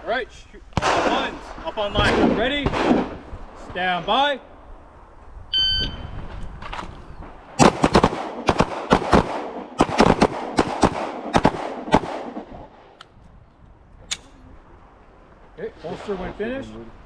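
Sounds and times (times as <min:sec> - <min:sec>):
handgun shots: 0:14.1 - 0:14.3.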